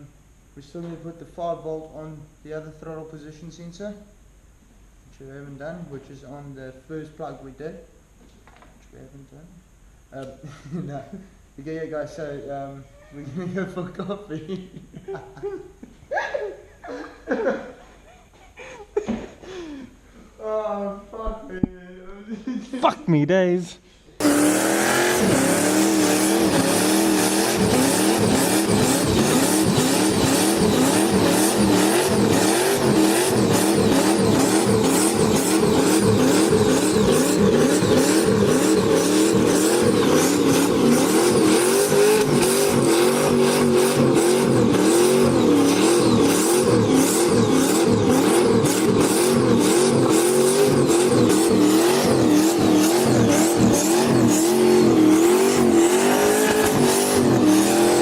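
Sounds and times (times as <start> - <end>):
engine revving under heavy throttle: 24.2 - 58.0.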